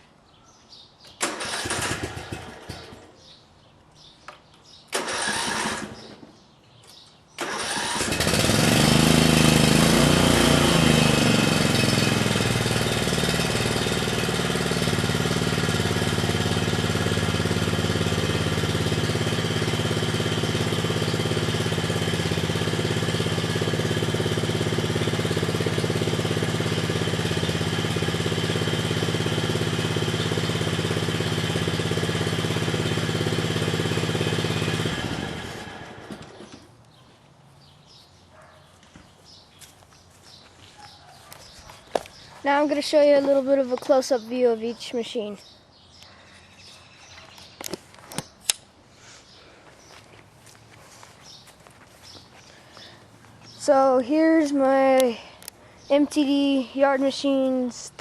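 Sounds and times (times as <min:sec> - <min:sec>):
engine cranking: 0:01.2 - 0:03.1, 0:04.9 - 0:06.2, 0:07.4 - 0:36.7
small engine running: 0:01.2 - 0:03.2, 0:05.0 - 0:06.2, 0:07.4 - 0:36.7.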